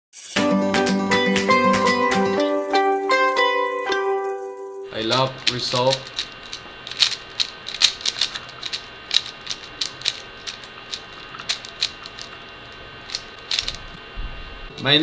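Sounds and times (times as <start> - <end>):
puzzle cube plastic clicks: 5.1 - 12.4, 13.0 - 14.0.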